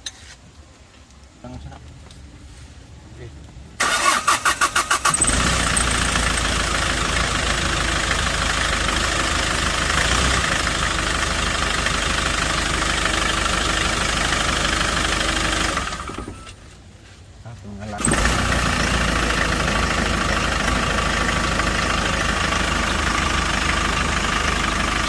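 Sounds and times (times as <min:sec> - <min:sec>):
diesel engine idling: 0:03.8 - 0:16.7, 0:17.9 - 0:25.0.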